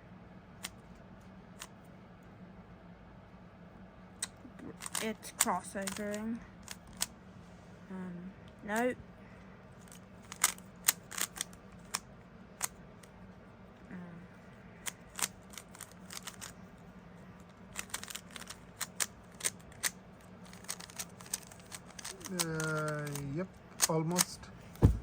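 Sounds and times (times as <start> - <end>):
puzzle cube plastic clicking: 4.2 - 7.1, 9.8 - 13.1, 14.8 - 16.6, 17.4 - 24.3.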